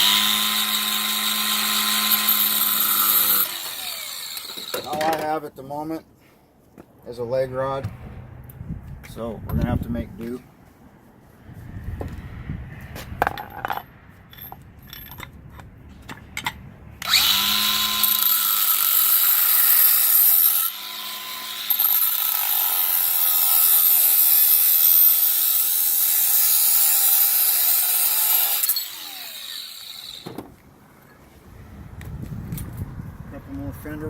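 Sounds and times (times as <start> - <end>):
power tool grinding metal: 0.0 - 5.1, 17.0 - 30.3.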